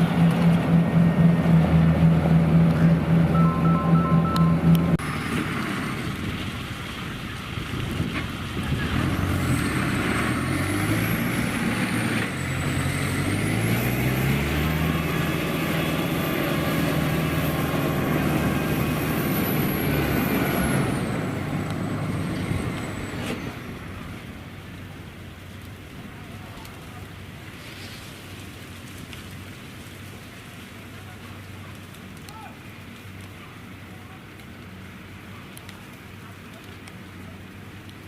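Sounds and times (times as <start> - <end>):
diesel engine running: 0.0 - 29.0
thin high whine: 2.8 - 5.0.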